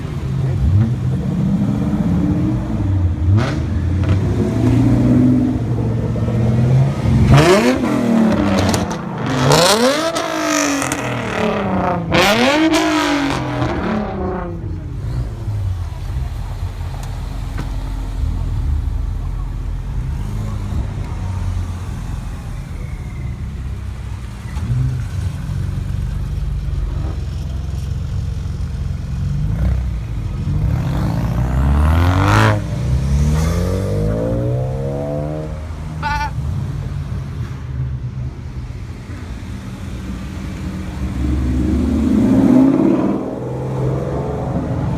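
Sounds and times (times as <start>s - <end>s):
car engine revving hard: 0.0s - 23.2s, 29.3s - 37.4s, 39.1s - 44.9s
performance car engines running: 0.0s - 44.9s
car driving past: 30.6s - 44.9s.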